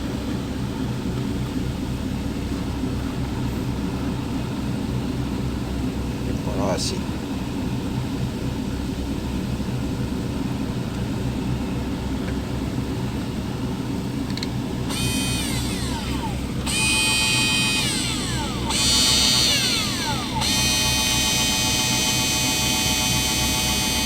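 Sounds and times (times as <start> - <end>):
mini grinder motor whining: 14.9 - 24.0.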